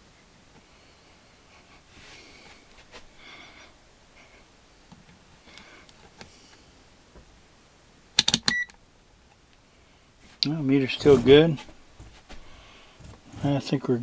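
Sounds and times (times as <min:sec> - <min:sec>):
loud sharp clicks: 0:08.2 - 0:08.7.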